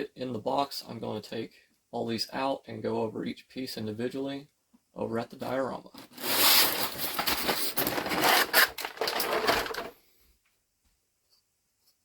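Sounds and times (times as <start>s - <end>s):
plastic packaging crackling: 6.0s - 10.0s.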